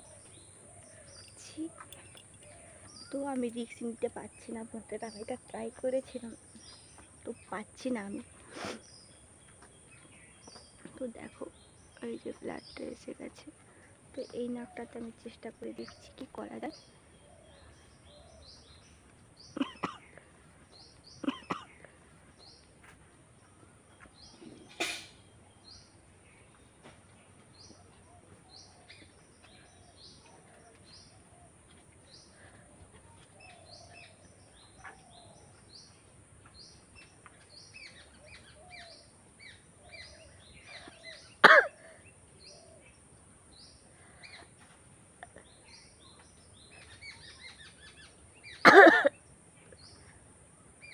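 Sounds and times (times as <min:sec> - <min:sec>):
small birds chirping: 0:00.0 - 0:50.9
woman coughing and sneezing: 0:19.6 - 0:20.1, 0:21.2 - 0:21.8, 0:24.6 - 0:25.2, 0:41.4 - 0:41.8, 0:48.6 - 0:49.2.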